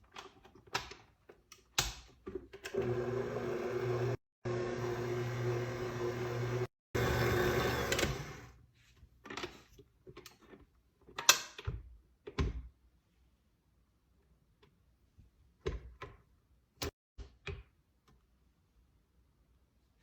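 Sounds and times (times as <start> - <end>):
kitchen appliance motor running: 2.7 - 8.6.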